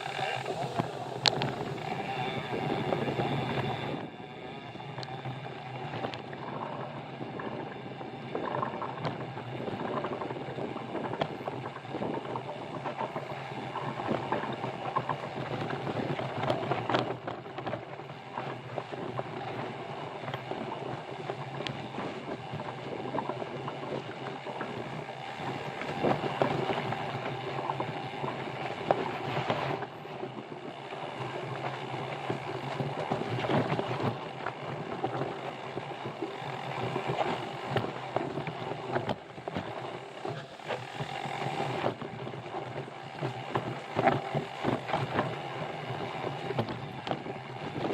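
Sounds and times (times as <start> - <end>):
mountain bike rattling on trail: 0.0 - 47.9.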